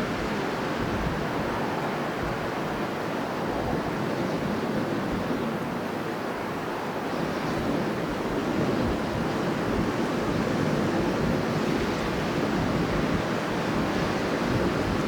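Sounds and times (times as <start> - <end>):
strong wind blowing: 7.1 - 15.0.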